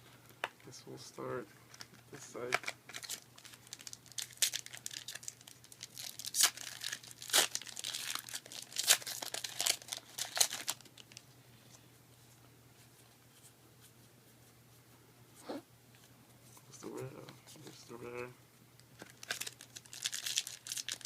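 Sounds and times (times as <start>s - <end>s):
foil wrapper crinkling and tearing: 2.4s - 11.2s, 19.0s - 21.0s.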